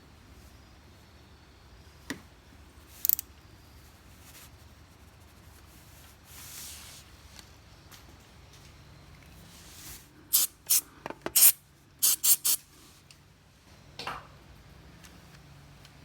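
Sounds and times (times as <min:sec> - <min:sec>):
aerosol spray can spraying: 0:10.3 - 0:10.8, 0:11.4 - 0:12.6.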